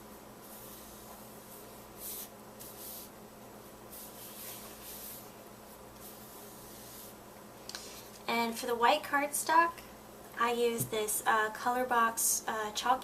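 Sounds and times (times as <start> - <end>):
ink pad scratching on paper: 0.4 - 3.1, 3.9 - 5.3, 6.0 - 7.2.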